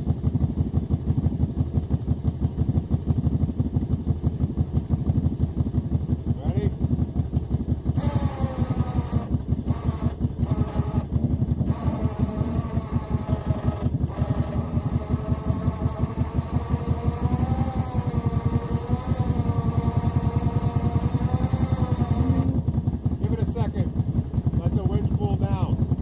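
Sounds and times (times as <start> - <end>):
atv engine chugging: 0.0 - 26.0
wavering whine: 7.9 - 22.8.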